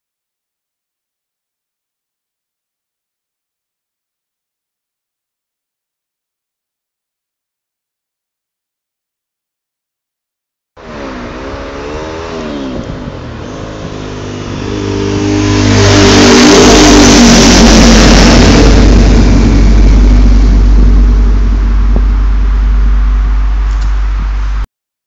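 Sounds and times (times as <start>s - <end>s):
motorcycle accelerating past: 10.8s - 24.1s
motorcycle engine revving: 10.8s - 24.6s.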